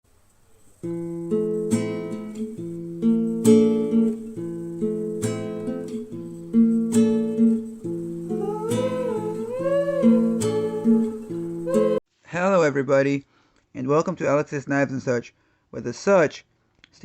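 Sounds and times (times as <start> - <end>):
strummed acoustic guitar: 0.8 - 12.0
gliding melody line: 8.2 - 12.0.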